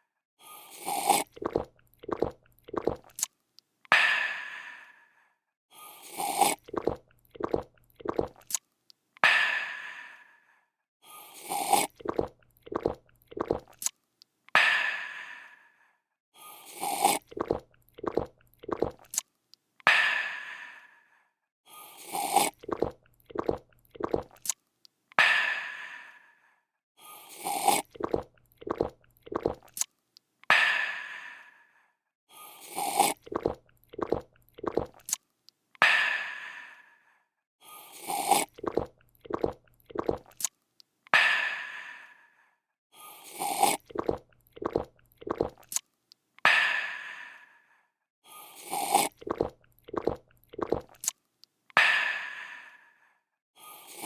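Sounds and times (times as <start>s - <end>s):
person slurping a drink: 0.6s - 3.3s, 5.9s - 8.6s, 11.2s - 13.9s, 16.6s - 19.2s, 21.9s - 24.6s, 27.2s - 29.9s, 32.5s - 35.2s, 37.8s - 40.5s, 43.1s - 45.8s, 48.4s - 51.2s
person gulping: 0.8s - 3.3s, 6.2s - 8.6s, 11.5s - 13.9s, 16.8s - 19.2s, 22.1s - 24.6s, 27.4s - 29.8s, 32.8s - 35.2s, 38.1s - 40.5s, 43.4s - 45.8s, 48.7s - 51.1s.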